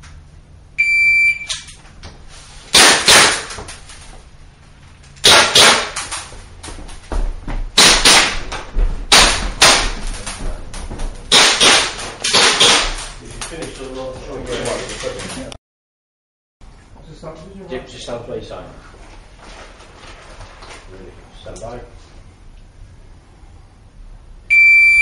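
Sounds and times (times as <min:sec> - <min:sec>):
shot timer beep: 0:00.8 - 0:01.7, 0:24.5 - 0:25.0.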